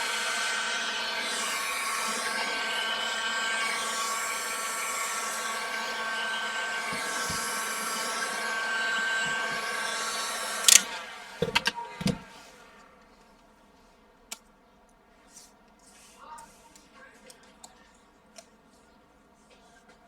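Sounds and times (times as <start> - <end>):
hot-air blower whining fan: 0.0 - 12.8
blower switch click: 10.6 - 11.0.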